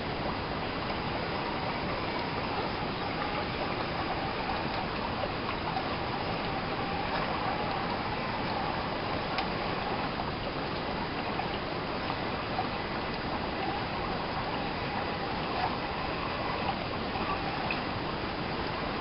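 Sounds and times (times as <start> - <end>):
creek water trickling: 0.0 - 19.0
faint ticks: 0.8 - 9.8.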